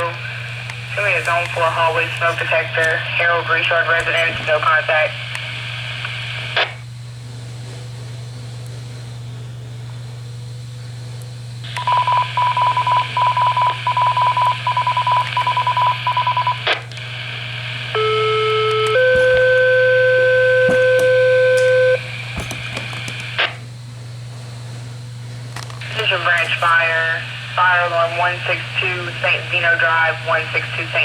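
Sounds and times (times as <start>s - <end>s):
sharp radio clicks: 0.0s - 6.8s, 20.6s - 23.6s
steady radio hum: 0.0s - 9.9s, 11.6s - 31.0s
rapid radio beeps: 11.7s - 16.8s, 18.0s - 22.1s.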